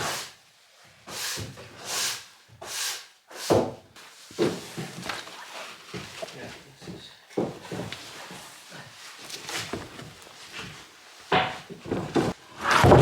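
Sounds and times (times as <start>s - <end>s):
wooden knocks and clatter: 9.6s - 13.0s.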